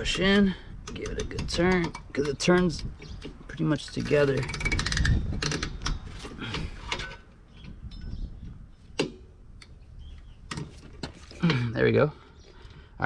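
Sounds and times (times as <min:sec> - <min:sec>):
metal spring retainer clicks and scrapes: 0:00.1 - 0:08.2.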